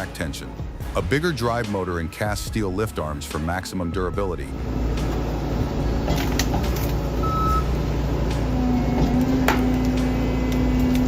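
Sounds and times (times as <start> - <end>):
diesel engine running: 4.4 - 11.0.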